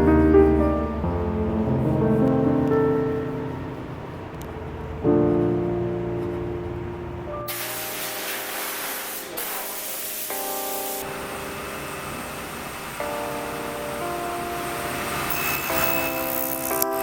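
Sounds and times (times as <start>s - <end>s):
calm piano music: 0.0s - 17.0s
steady hiss: 7.5s - 16.9s.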